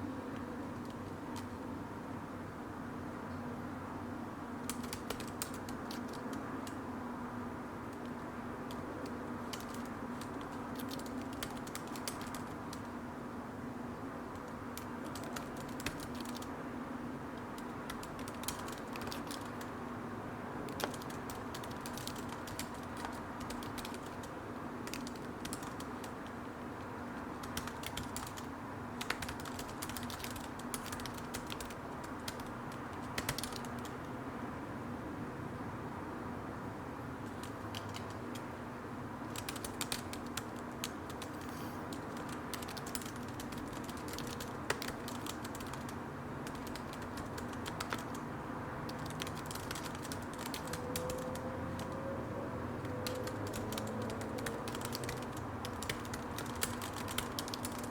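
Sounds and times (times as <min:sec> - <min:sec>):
low background hum: 0:00.0 - 0:57.9
keyboard typing: 0:04.7 - 0:06.8, 0:07.9 - 0:12.9, 0:14.3 - 0:16.5, 0:17.3 - 0:19.7, 0:20.7 - 0:26.4, 0:27.1 - 0:34.0, 0:37.2 - 0:38.5, 0:39.3 - 0:48.2, 0:48.9 - 0:52.0, 0:52.8 - 0:57.9.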